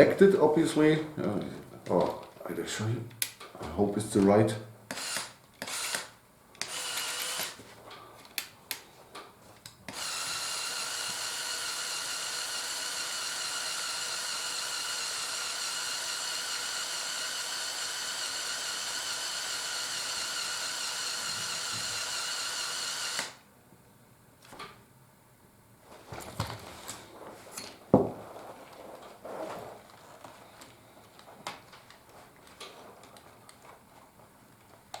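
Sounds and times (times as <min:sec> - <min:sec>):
small electric motor whining: 0:04.9 - 0:07.6, 0:09.9 - 0:23.4.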